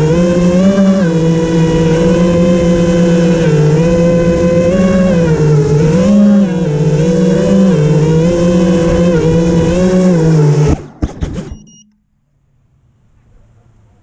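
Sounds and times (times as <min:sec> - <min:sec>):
motor running: 0:00.0 - 0:11.0.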